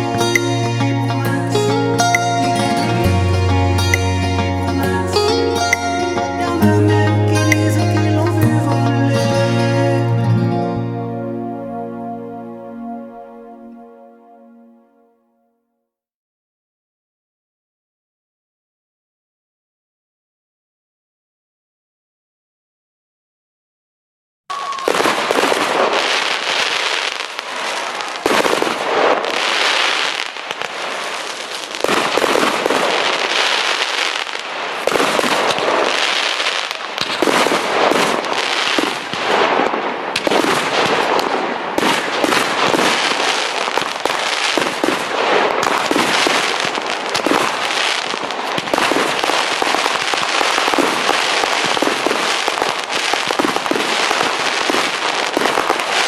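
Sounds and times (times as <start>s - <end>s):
firework shells bursting: 24.5s - 56.0s
fireworks crackling: 24.5s - 56.0s.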